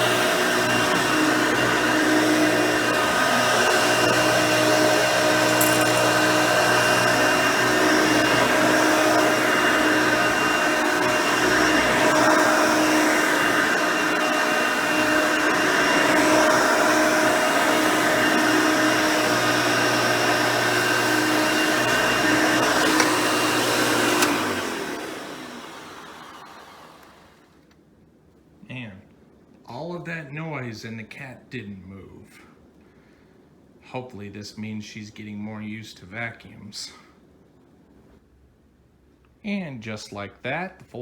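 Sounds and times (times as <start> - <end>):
upright vacuum running: 0.0 - 27.6
vacuum switch click: 23.9 - 24.6.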